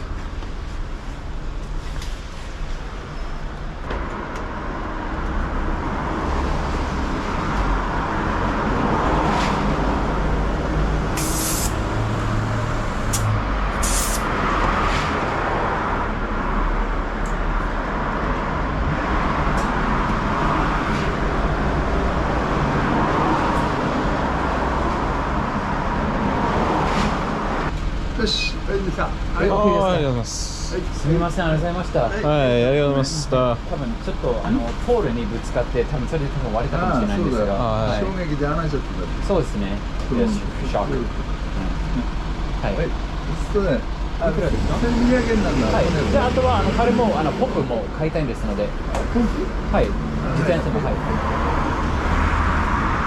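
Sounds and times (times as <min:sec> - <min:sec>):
rumble of passing vehicles: 0:00.0 - 0:53.0
short sharp hisses: 0:11.1 - 0:14.3.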